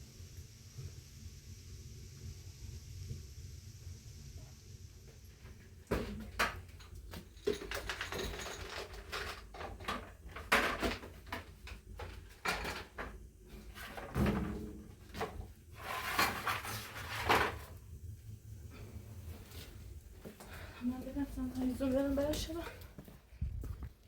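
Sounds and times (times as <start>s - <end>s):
objects knocking and clattering: 5.5s - 17.8s.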